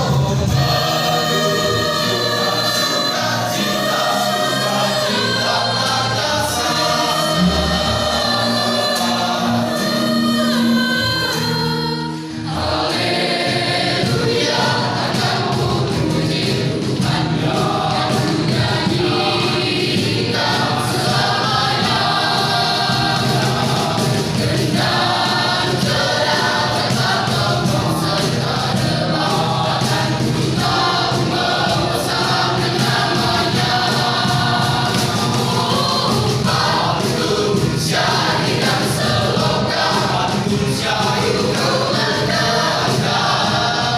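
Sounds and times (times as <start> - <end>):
youth choir singing: 0.0 - 43.9.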